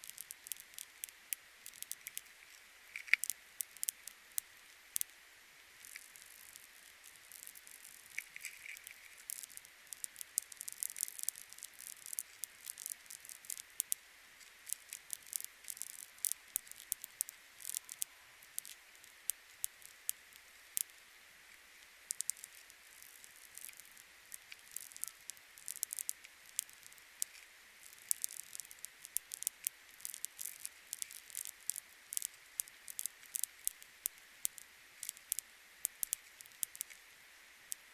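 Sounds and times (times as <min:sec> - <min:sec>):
light clicks and crackles: 0:00.0 - 0:37.9.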